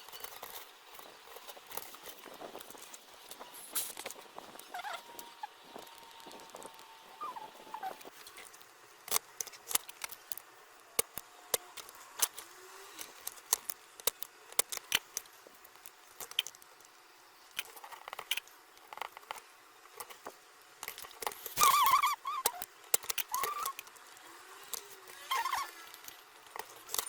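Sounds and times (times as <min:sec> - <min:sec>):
small tools clicking and tapping: 0:00.0 - 0:06.9, 0:07.9 - 0:27.0
small squeaks: 0:00.0 - 0:08.6, 0:21.3 - 0:23.9, 0:24.6 - 0:27.0.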